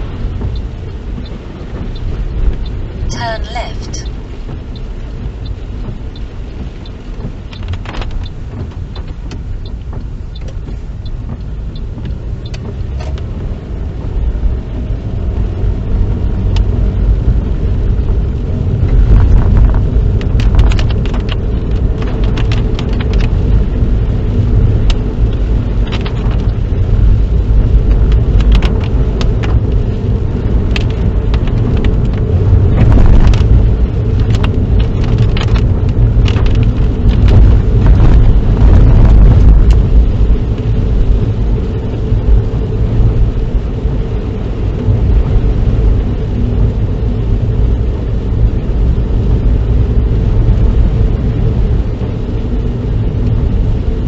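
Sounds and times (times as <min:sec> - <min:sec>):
car road and engine rumble: 0:00.0 - 0:54.0
sharp ticks and taps: 0:06.2 - 0:13.2.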